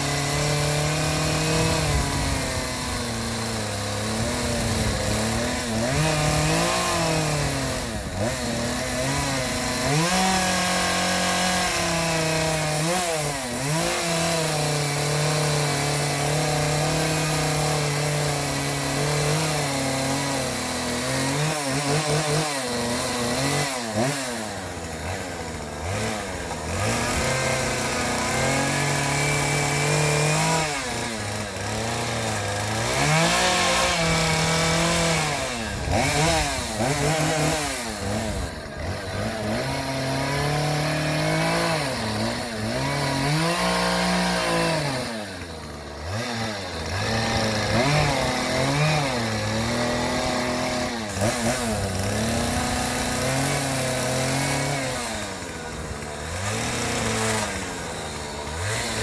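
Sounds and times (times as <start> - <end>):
small petrol engine revving: 0.0 - 59.0.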